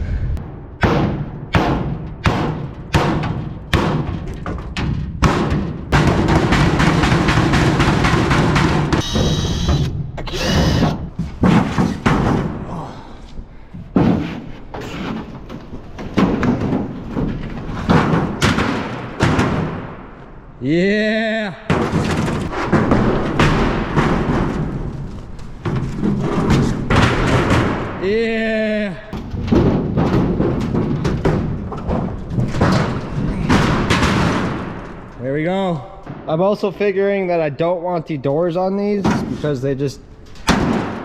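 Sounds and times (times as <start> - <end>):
wooden boards thudding: 0.8 - 9.1, 10.6 - 12.8, 13.8 - 20.2, 21.7 - 28.4, 29.2 - 35.2, 40.4 - 41.0.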